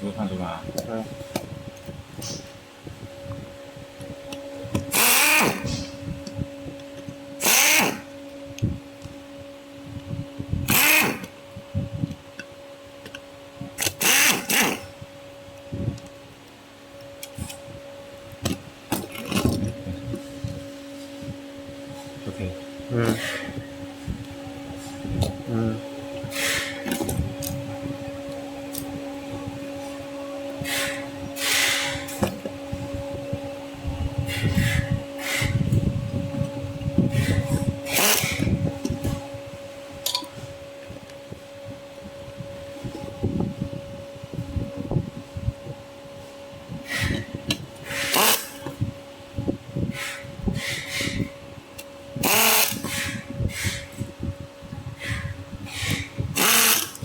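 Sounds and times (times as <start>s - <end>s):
steady low hum: 0.0s - 57.0s
electric screwdriver whirring: 4.7s - 5.9s, 7.4s - 8.1s, 10.7s - 11.3s, 13.8s - 14.9s, 37.1s - 39.0s, 47.8s - 48.7s, 52.2s - 53.9s, 55.7s - 57.0s.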